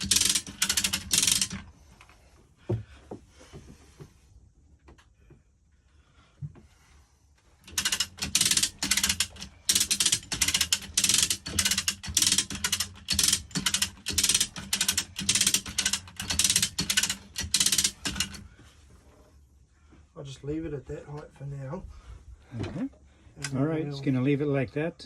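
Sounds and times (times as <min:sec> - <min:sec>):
ratchet clicking: 0:00.0 - 0:01.6, 0:07.6 - 0:18.4.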